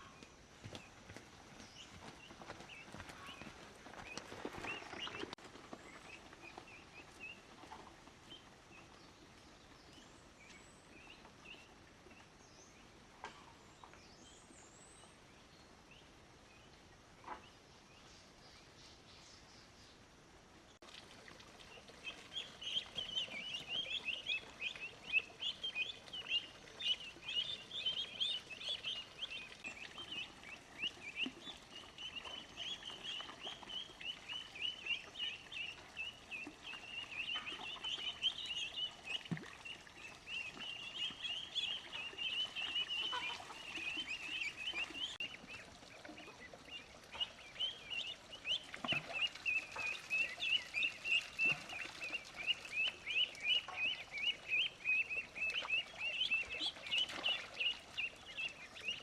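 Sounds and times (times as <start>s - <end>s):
chicks peeping: 1.8s - 10.0s, 21.7s - 59.0s.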